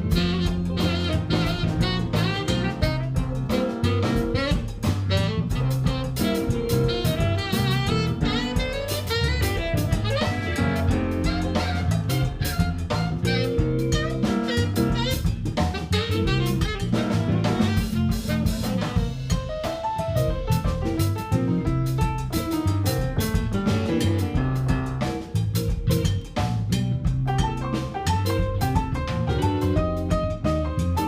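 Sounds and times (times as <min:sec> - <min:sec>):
lead instrument bending notes: 0:00.0 - 0:19.2
bass line: 0:00.0 - 0:31.0
drum kit beat: 0:00.0 - 0:31.0.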